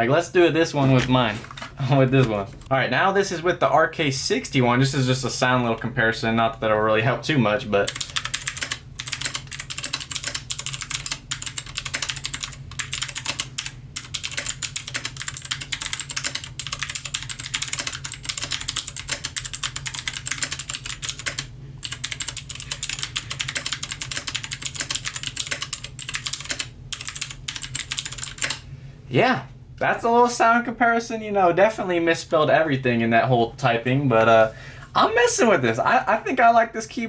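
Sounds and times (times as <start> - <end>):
mechanical keyboard typing: 7.8 - 28.6.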